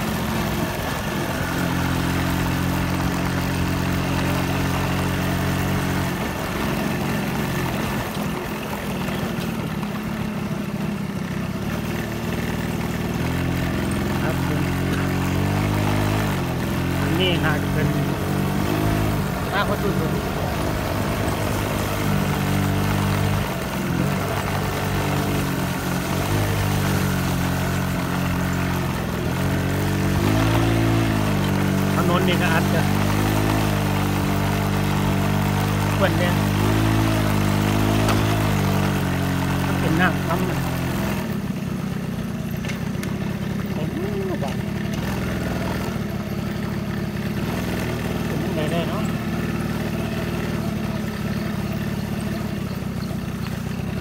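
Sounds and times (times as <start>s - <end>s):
small engine running: 0.0s - 54.0s.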